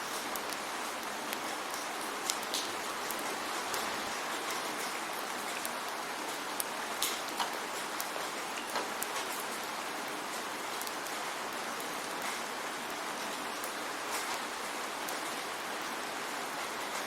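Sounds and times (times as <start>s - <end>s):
sharp ticks of raindrops: 0.0s - 17.0s
steady rain hiss: 0.0s - 17.0s.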